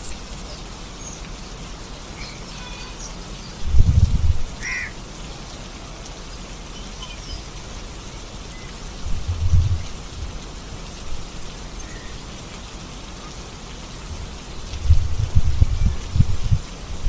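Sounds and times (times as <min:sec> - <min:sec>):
bird calling: 0:00.0 - 0:03.6, 0:04.6 - 0:05.0
steady rain falling: 0:00.0 - 0:17.0.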